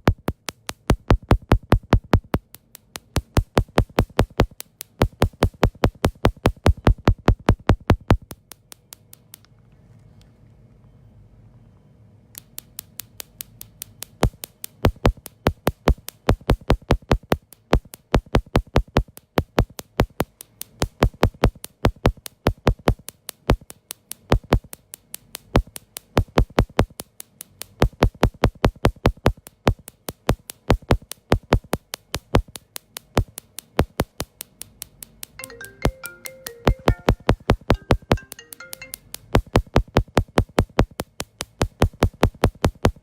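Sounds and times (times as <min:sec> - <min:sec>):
electronic music with drum beat: 0:35.6 - 0:40.9.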